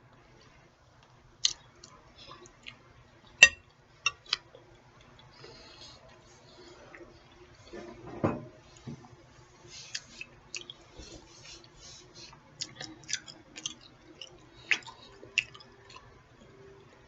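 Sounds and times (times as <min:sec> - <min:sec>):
person chewing wetly: 0:01.4 - 0:02.8, 0:03.4 - 0:07.8, 0:09.8 - 0:16.6.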